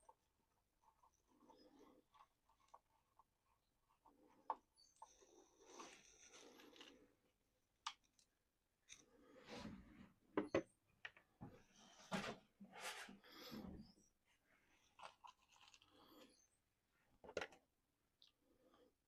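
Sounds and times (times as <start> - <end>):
rustling scrapes: 11.8 - 14.0.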